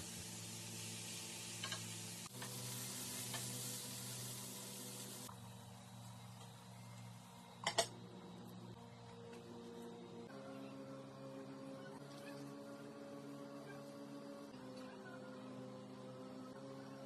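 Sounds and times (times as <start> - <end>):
food sizzling in a pan: 0.0 - 7.2.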